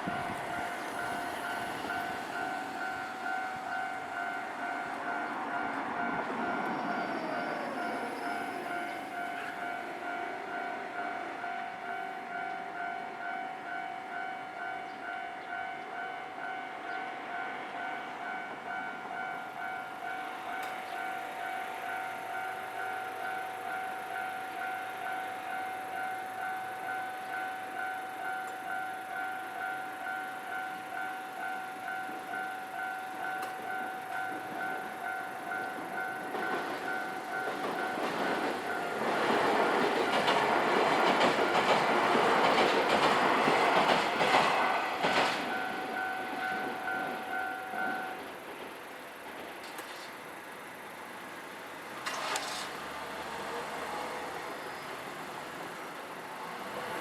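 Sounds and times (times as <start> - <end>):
train passing: 0.0 - 57.0.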